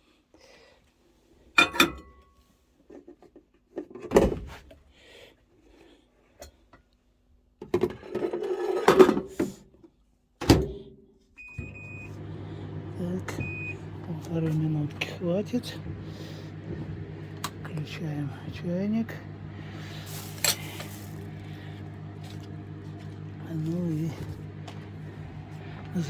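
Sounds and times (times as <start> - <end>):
microwave humming: 11.4 - 26.0
bowl clattering: 20.0 - 21.4.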